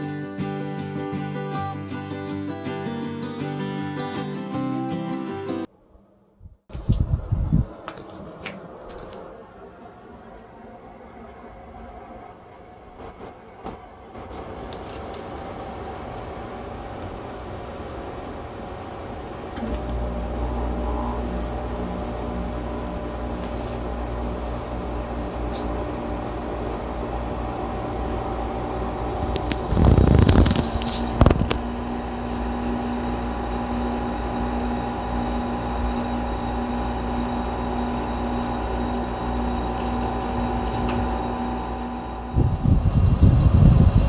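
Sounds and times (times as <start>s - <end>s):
air conditioner humming: 6.8s - 44.0s.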